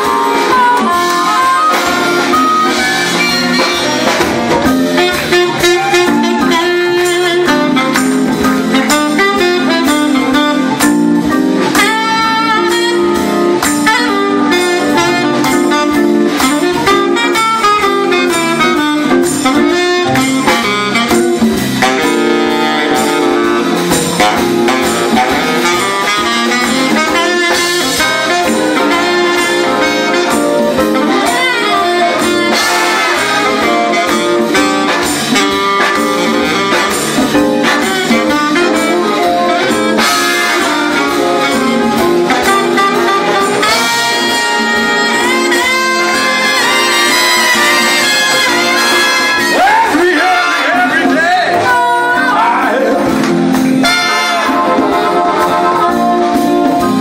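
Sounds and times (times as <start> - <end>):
big band jazz blues: 0.0 - 57.0.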